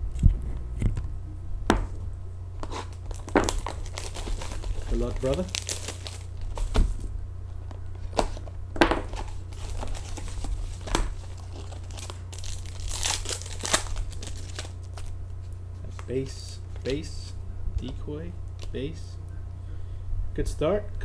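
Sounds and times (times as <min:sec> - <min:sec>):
low hum: 0:00.0 - 0:21.0
wrapper tearing and crinkling: 0:02.6 - 0:07.0, 0:09.1 - 0:15.2.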